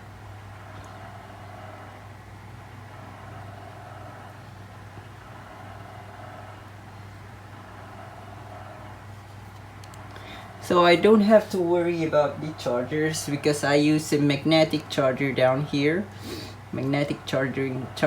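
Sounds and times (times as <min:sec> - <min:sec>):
low room hum: 0:00.0 - 0:18.0.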